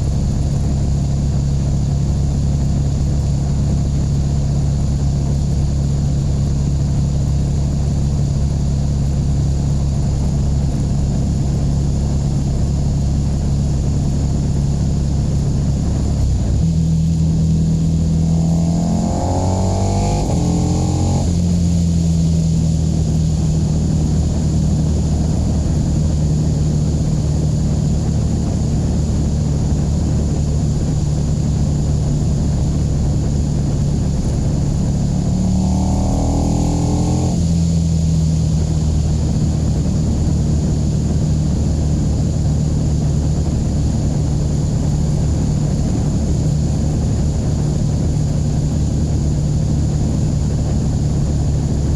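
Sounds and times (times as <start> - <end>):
wind noise on microphone: 10.1 - 51.9
motorcycle engine revving: 12.2 - 51.9.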